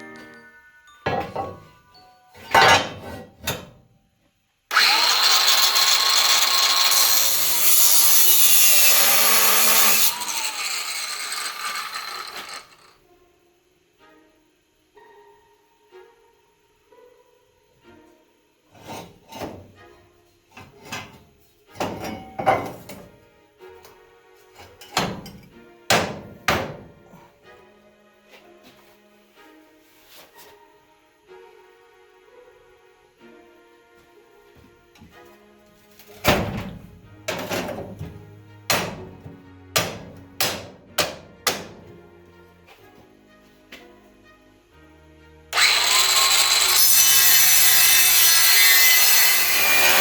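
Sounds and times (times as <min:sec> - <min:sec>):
background music: 0:00.0 - 0:50.0
metallic knocks on tool chest: 0:01.1 - 0:01.7.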